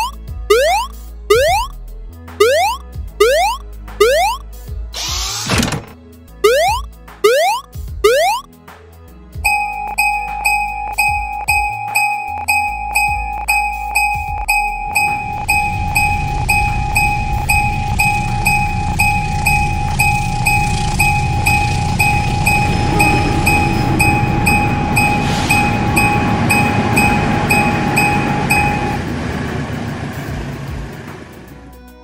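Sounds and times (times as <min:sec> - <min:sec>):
level crossing bell dinging: 0:00.0 - 0:01.7, 0:02.4 - 0:04.4, 0:09.5 - 0:29.0
passing train rumble: 0:15.4 - 0:31.8.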